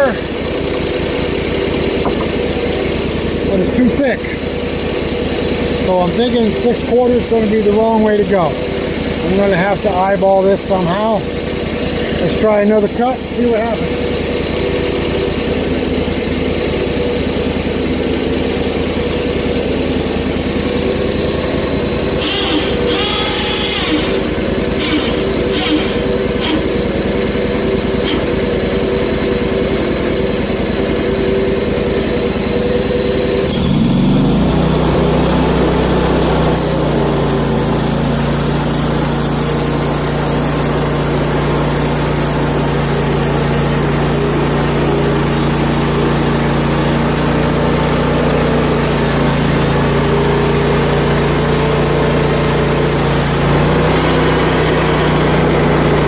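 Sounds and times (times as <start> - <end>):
band saw blade cutting log: 0.0 - 15.6, 20.6 - 30.4, 33.3 - 56.0
gas engine running: 0.0 - 56.0.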